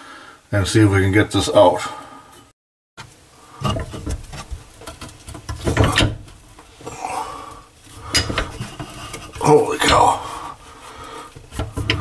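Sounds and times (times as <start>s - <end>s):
tool knocking and scraping on pipe: 3.0s - 6.4s, 8.0s - 10.1s, 11.3s - 12.0s.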